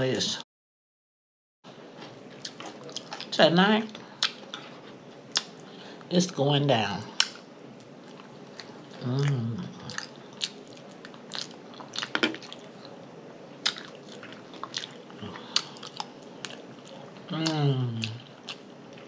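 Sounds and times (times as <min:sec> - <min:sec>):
chewing and lip smacking: 0:02.0 - 0:03.3, 0:07.2 - 0:13.0, 0:13.6 - 0:19.0
food crunching: 0:02.0 - 0:03.3, 0:07.2 - 0:19.0
person humming: 0:17.3 - 0:18.2.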